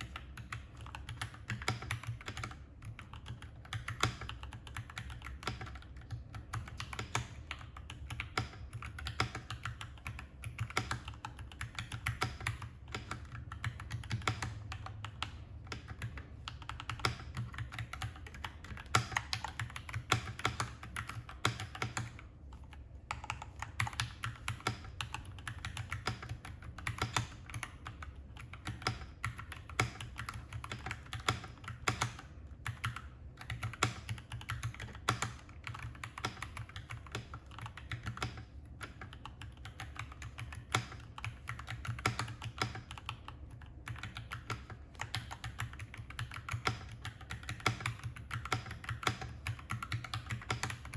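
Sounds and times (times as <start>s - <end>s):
mechanical keyboard typing: 0.0s - 50.9s.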